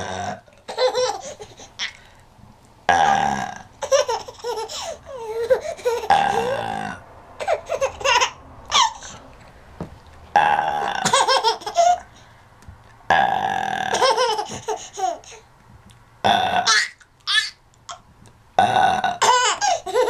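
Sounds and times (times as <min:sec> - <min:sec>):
person burping loudly: 0:00.0 - 0:00.5, 0:02.9 - 0:03.8, 0:06.1 - 0:07.1, 0:10.3 - 0:11.2, 0:13.1 - 0:14.1, 0:16.2 - 0:16.9, 0:18.6 - 0:19.4
baby laughing: 0:00.6 - 0:02.2, 0:03.7 - 0:06.8, 0:07.4 - 0:09.2, 0:10.8 - 0:12.2, 0:13.9 - 0:15.5, 0:16.6 - 0:18.0, 0:19.2 - 0:20.0.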